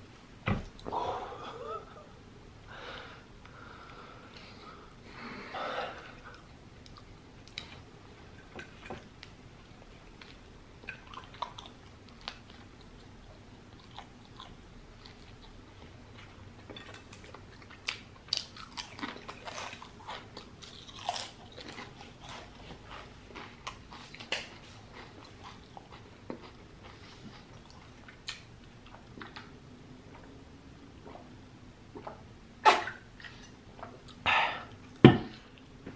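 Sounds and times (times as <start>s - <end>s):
chewing and biting sandwich: 13.7s - 28.4s.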